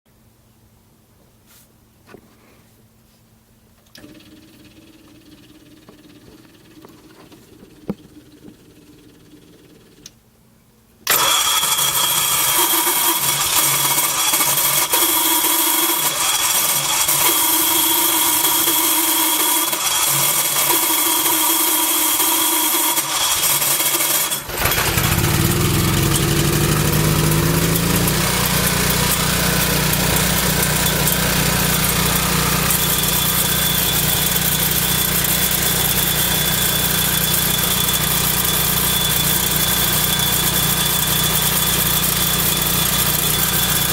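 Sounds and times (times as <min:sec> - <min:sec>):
generator cranking with metallic screeching: 0:11.1 - 0:43.9
generator engine running: 0:11.1 - 0:43.9.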